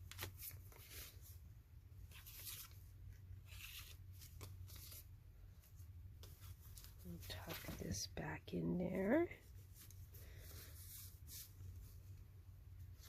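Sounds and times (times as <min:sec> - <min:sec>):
paper rustling and crinkling: 0:00.0 - 0:01.4, 0:02.0 - 0:08.0
low steady hum: 0:00.0 - 0:13.0.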